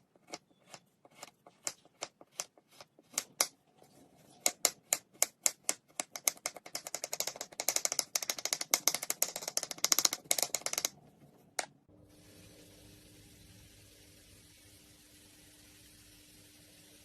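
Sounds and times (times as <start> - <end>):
rapid dry clicking: 4.5 - 10.9
faint hiss with low hum: 11.1 - 17.0.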